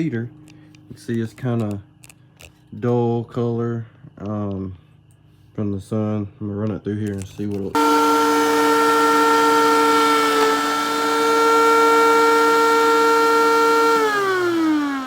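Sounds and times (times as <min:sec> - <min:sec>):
thickness planer motor whine: 0:07.8 - 0:15.0.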